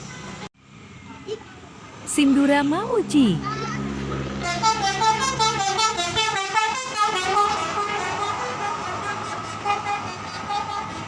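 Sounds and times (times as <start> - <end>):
bus musical air horn melody: 4.3 - 11.0.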